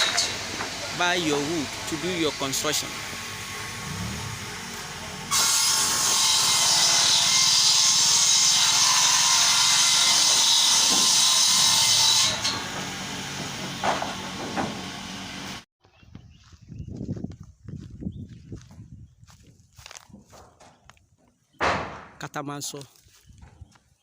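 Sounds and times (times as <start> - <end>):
woodworking machine cutting timber: 0.0 - 15.7.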